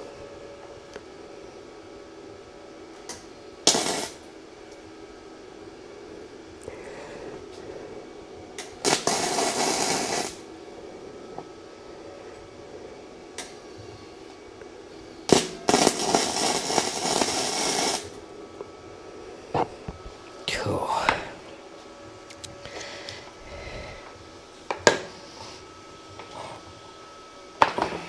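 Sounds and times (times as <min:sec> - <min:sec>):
welder crackling: 0:03.0 - 0:04.4, 0:08.6 - 0:10.5, 0:15.3 - 0:18.2.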